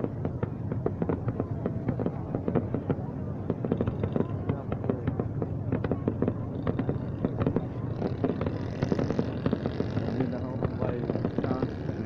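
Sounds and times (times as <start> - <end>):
fireworks crackling and banging: 0.0 - 12.0.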